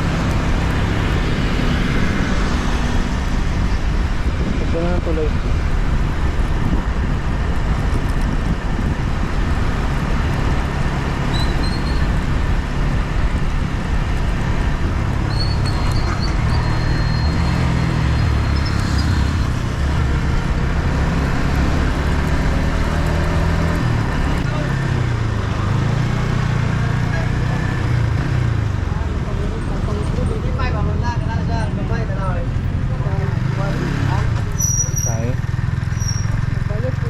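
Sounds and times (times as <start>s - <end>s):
wind rush over microphone: 0.0s - 24.5s
motorcycle engine running: 31.6s - 37.0s.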